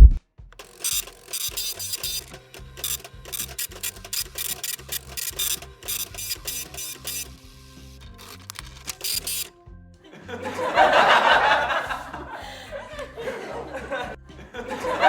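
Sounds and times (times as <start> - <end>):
machine rasping strokes: 0.6 - 9.5.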